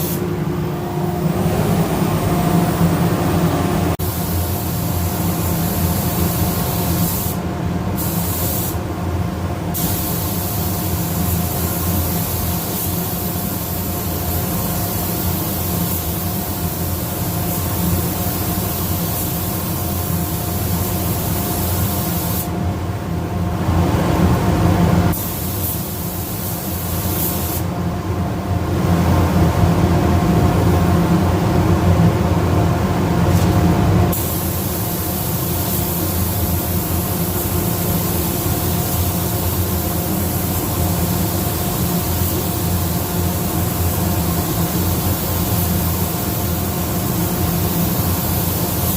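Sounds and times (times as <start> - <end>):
spray gun air hiss: 0.0 - 8.8, 9.7 - 22.6, 25.1 - 27.7, 33.3 - 48.9
low motor hum: 0.3 - 4.0.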